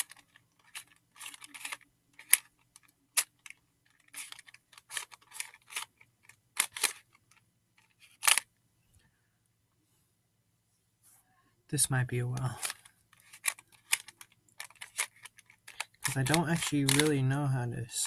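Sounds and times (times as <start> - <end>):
puzzle cube clicking as turned: 0.0 - 8.5, 12.4 - 17.2.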